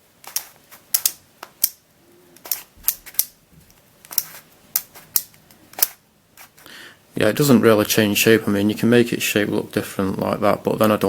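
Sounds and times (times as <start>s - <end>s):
plastic puzzle clicking: 0.2s - 1.8s.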